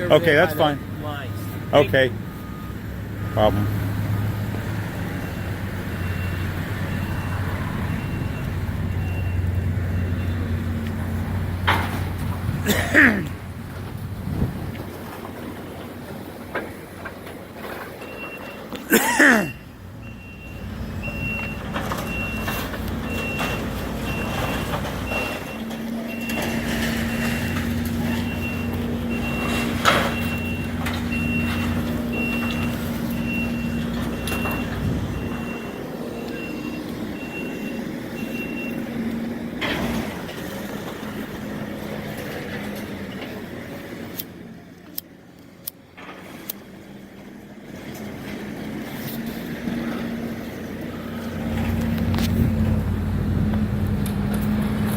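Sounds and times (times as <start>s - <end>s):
backup alarm beeping: 0.0s - 11.6s, 18.0s - 18.8s, 19.4s - 39.4s
heavy diesel equipment running: 0.0s - 54.9s.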